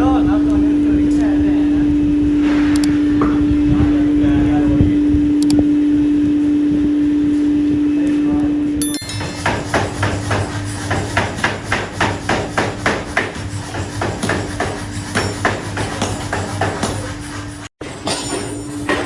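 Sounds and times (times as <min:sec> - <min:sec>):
steady machine hum: 0:00.0 - 0:17.7
hammer blows on metal: 0:08.8 - 0:19.0.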